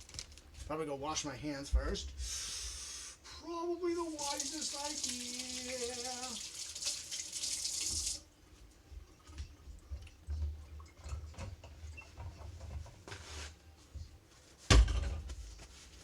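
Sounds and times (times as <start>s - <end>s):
hands rubbing at a sink: 4.1s - 6.9s.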